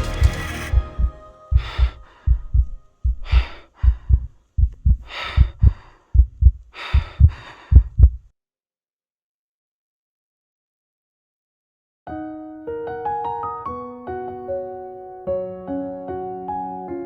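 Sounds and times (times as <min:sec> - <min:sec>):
background music: 0:00.0 - 0:02.4
heartbeat thumps: 0:00.0 - 0:08.3.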